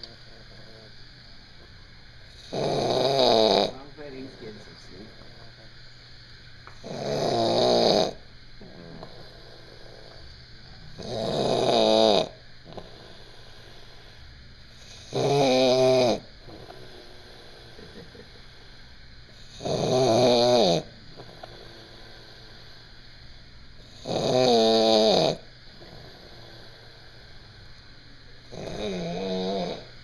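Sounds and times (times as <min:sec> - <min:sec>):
person snoring loudly: 0:02.3 - 0:03.8, 0:06.8 - 0:10.2, 0:10.9 - 0:14.2, 0:14.8 - 0:22.8, 0:23.8 - 0:27.5, 0:28.4 - 0:29.9.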